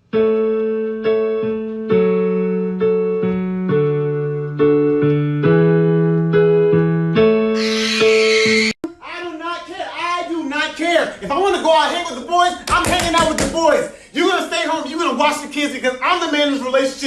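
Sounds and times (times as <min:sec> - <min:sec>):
keyboard chords ringing: 0:00.0 - 0:07.8.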